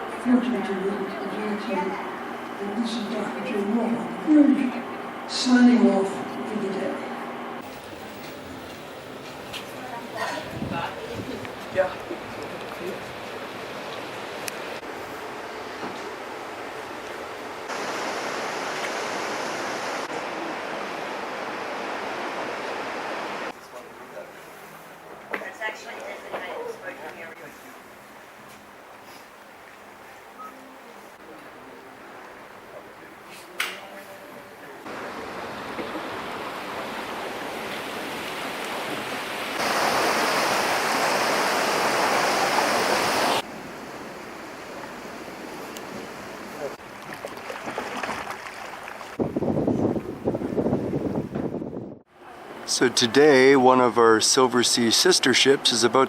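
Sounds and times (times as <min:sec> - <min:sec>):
rushing water: 0:07.6 - 0:23.6, 0:34.8 - 0:50.4
rushing wind: 0:10.4 - 0:15.4, 0:34.9 - 0:46.8, 0:49.0 - 0:52.6.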